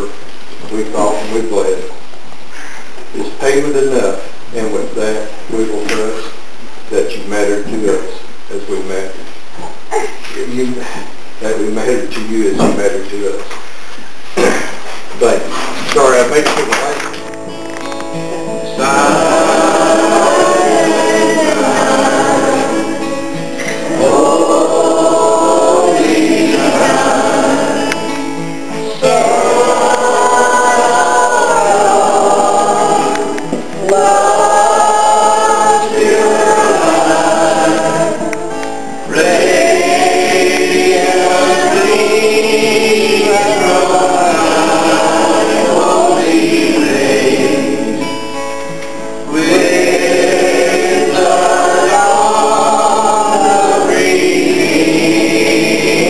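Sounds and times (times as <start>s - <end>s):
choir singing a hymn: 18.1s - 56.0s.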